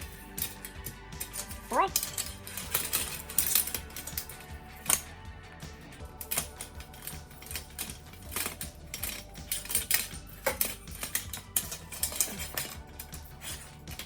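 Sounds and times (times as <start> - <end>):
metal umbrella ribs clicking: 0.0 - 14.0.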